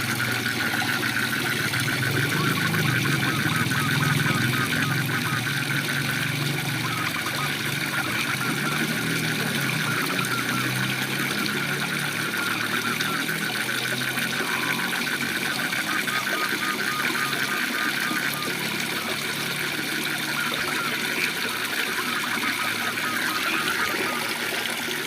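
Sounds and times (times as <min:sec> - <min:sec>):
frogs trilling: 0:00.0 - 0:25.0
waterfall rushing: 0:00.0 - 0:25.0.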